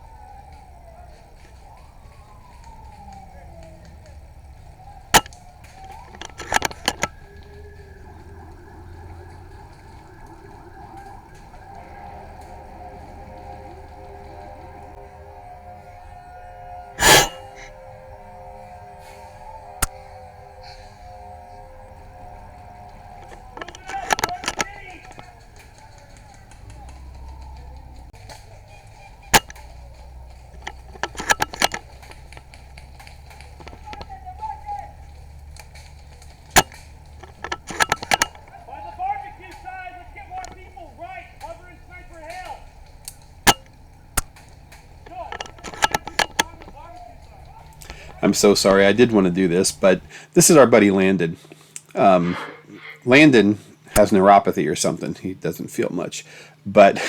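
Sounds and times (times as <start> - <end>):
airsoft gun shots: 17.0 - 17.6.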